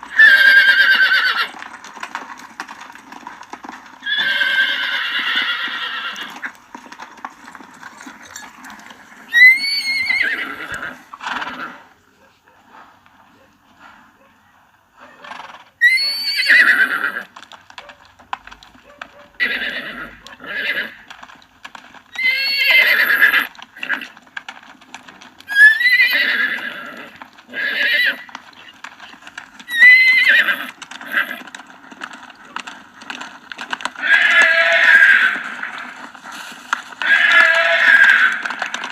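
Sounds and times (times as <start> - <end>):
horse neighing: 0.0 - 2.2, 3.6 - 12.0, 15.3 - 17.4, 19.3 - 21.2, 22.1 - 24.2, 25.5 - 31.6, 34.0 - 36.0, 37.0 - 38.9
hooves clopping: 0.0 - 38.9.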